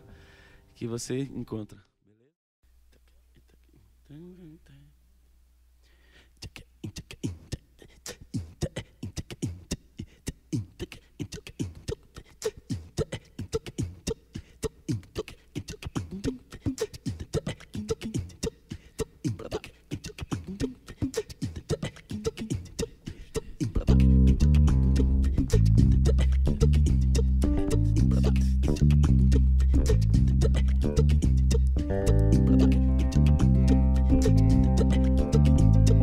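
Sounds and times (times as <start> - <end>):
electric bass groove: 23.7 - 36.0.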